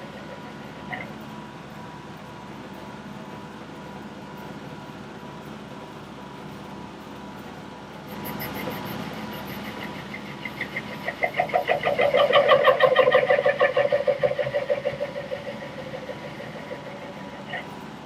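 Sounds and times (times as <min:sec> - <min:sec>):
pulsing squeal from cutting: 0:08.1 - 0:17.8
lathe running: 0:08.1 - 0:18.0.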